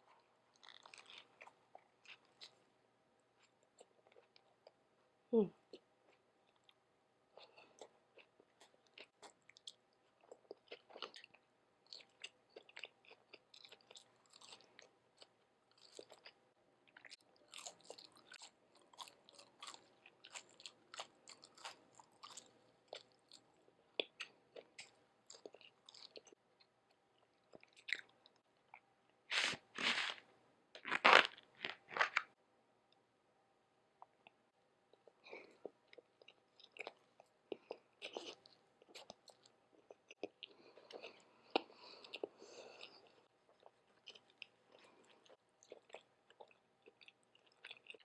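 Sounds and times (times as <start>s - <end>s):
crunchy food crunching: 0.1s - 2.6s, 7.4s - 26.4s, 29.3s - 32.3s, 35.4s - 48.0s
chewing with wet mouth clicks: 35.0s - 48.0s.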